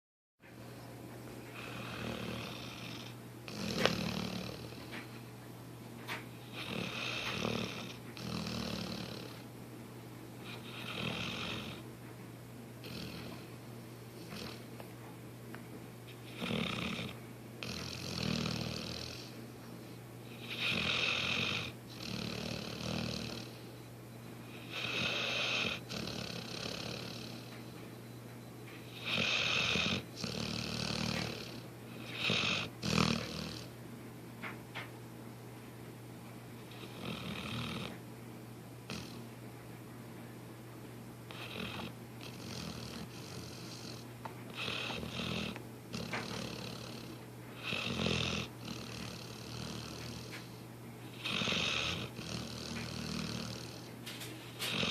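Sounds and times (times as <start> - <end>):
dog snoring: 1.5 - 5.2, 6.1 - 9.5, 10.4 - 11.8, 12.8 - 13.5, 14.2 - 14.7, 16.1 - 27.8, 28.8 - 33.8, 36.6 - 38.0, 38.8 - 39.3, 41.3 - 54.9
dog breathing quietly: 1.5 - 5.3, 6.1 - 9.5, 16.1 - 27.8, 28.7 - 33.7, 41.3 - 54.9.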